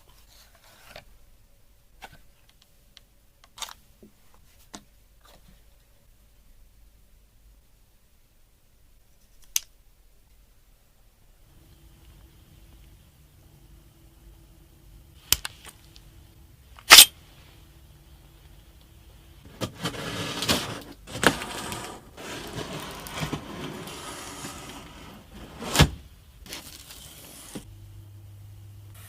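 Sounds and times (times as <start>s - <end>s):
packaging rustling and scraping: 19.5s - 27.7s.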